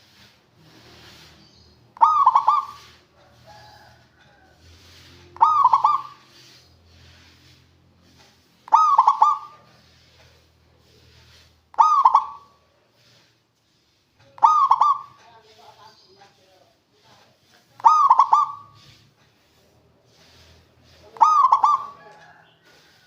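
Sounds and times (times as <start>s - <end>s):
dove cooing: 2.0s - 4.0s, 5.3s - 6.5s, 8.7s - 9.8s, 11.8s - 12.6s, 14.4s - 15.2s, 17.8s - 18.9s, 21.1s - 22.9s.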